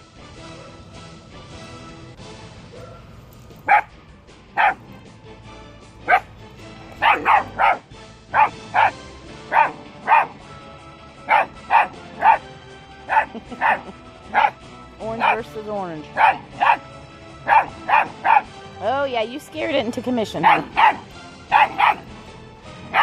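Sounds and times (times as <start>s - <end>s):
puppy barking: 2.7s - 4.0s, 4.6s - 4.8s, 6.0s - 6.3s, 7.0s - 10.4s, 11.3s - 12.5s, 13.1s - 14.6s, 15.2s - 15.5s, 16.2s - 18.5s, 20.4s - 22.1s.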